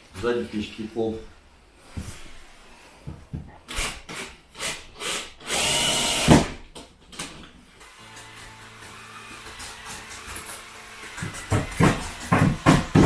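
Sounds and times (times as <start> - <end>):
power drill whine: 5.4 - 6.5, 7.8 - 12.4
knock: 11.3 - 13.0.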